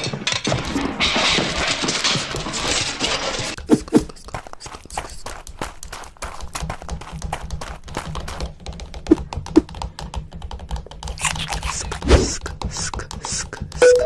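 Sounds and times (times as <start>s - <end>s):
rapid clicking and tapping: 3.5s - 14.0s
sharp knocks: 6.7s - 11.3s.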